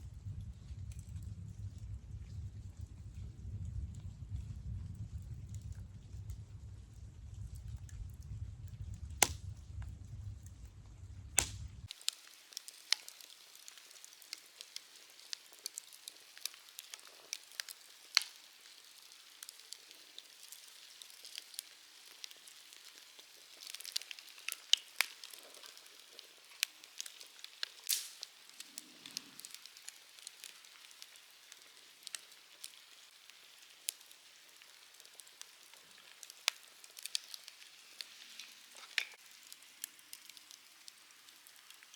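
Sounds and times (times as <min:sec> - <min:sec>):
low rumble: 0:00.0 - 0:11.9
faint steady hiss: 0:00.0 - 0:41.9
campfire crackling and popping: 0:00.2 - 0:41.9.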